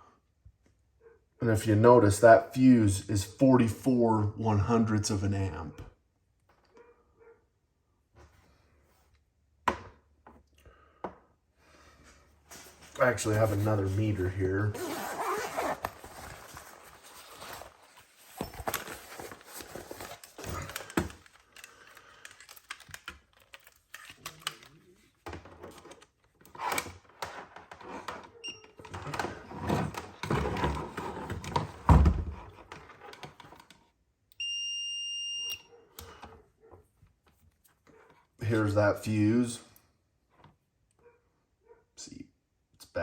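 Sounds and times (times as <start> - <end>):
clicks and handling noise: 14.8 - 31.8
multimeter beep: 34.4 - 35.7.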